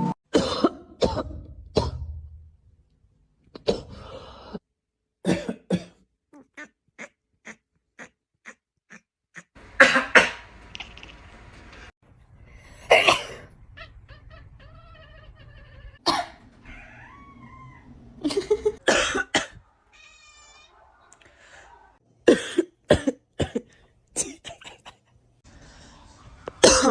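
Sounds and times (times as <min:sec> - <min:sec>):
people coughing: 0:05.3 - 0:06.0, 0:09.8 - 0:10.5, 0:12.9 - 0:13.5, 0:16.0 - 0:16.4, 0:18.4 - 0:19.6, 0:22.3 - 0:24.9, 0:26.6 - 0:26.9
cats meowing: 0:13.6 - 0:18.2, 0:19.8 - 0:21.3.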